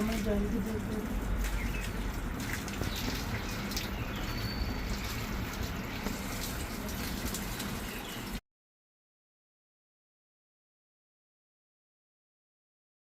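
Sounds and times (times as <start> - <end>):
bath water running: 0.0 - 8.4.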